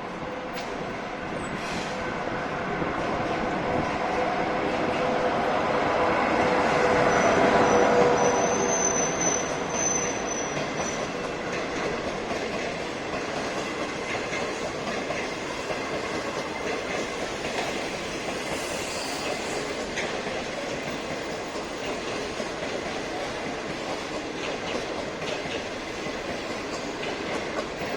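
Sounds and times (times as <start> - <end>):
train wheels rumbling on rails: 0.0 - 27.9
high-pitched wheel squeal: 7.1 - 11.0, 18.6 - 19.6.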